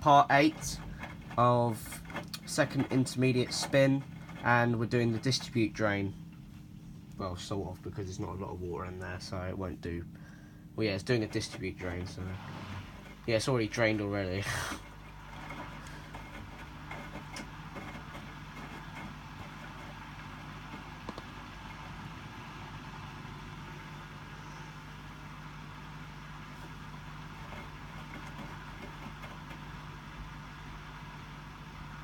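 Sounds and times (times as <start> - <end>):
washing machine pump humming: 0.0 - 32.0.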